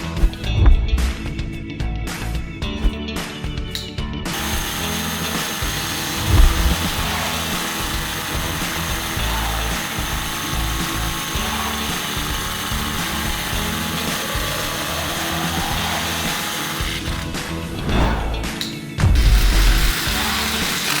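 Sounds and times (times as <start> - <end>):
background music: 0.0 - 21.0
cordless hammer drill running: 4.3 - 17.8, 19.2 - 21.0.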